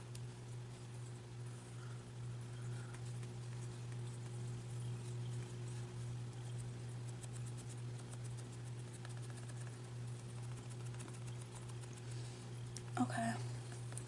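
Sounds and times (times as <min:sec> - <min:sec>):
low electrical hum: 0:00.0 - 0:14.0
sponge tapping on skin: 0:07.1 - 0:12.0.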